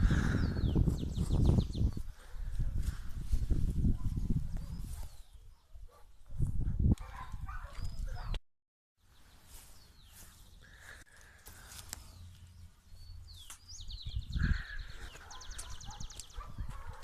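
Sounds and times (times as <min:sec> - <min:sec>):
birds chirping: 0:00.0 - 0:02.4, 0:07.0 - 0:08.4, 0:09.0 - 0:17.0.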